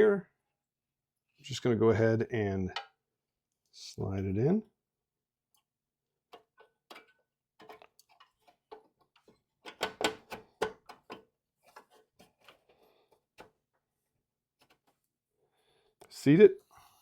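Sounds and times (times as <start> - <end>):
plastic and metal clicks and knocks: 6.3 - 12.6.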